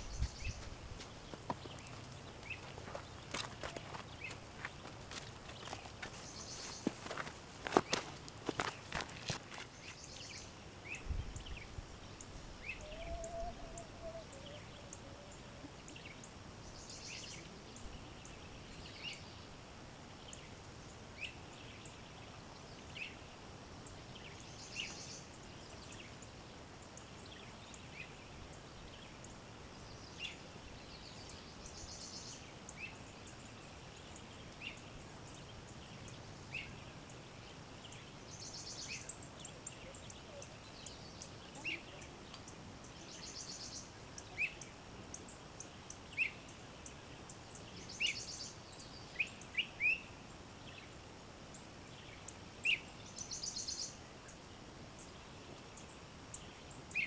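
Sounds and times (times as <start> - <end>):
bird chirping: 0.0 - 19.4, 29.9 - 50.9
faint background hiss: 0.0 - 57.0.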